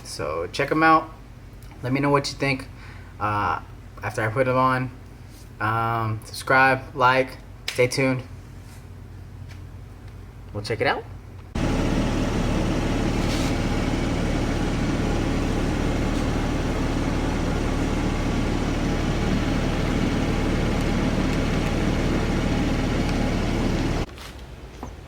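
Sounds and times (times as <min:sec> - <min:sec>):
car engine idling: 0:11.6 - 0:24.1.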